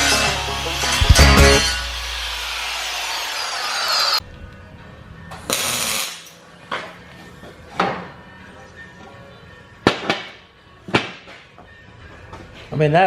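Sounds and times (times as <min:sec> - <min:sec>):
background music: 0:00.0 - 0:13.0
hammer blows on steel tubing: 0:00.2 - 0:03.0.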